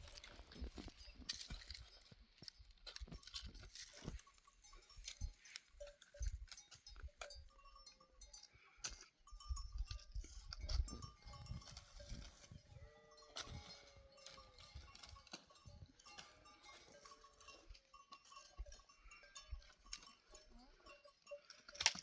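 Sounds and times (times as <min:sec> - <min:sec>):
animal bells clinking: 0:00.0 - 0:22.0
faint sheep and goat bleats: 0:10.2 - 0:17.9, 0:18.7 - 0:21.8.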